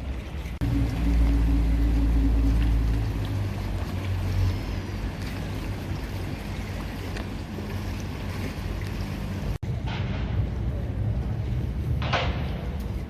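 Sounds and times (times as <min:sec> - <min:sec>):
boat engine humming: 0:00.0 - 0:09.7
water ambience: 0:00.0 - 0:13.0.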